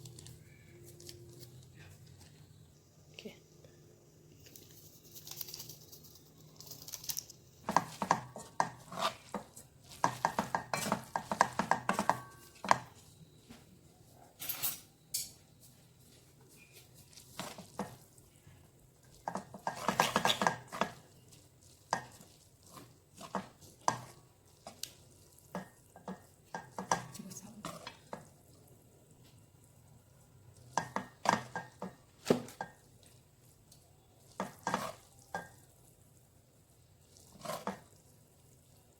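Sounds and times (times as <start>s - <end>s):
metal utensils scraping in pot: 7.7s - 13.0s, 19.1s - 24.2s, 34.4s - 35.6s, 37.2s - 38.0s.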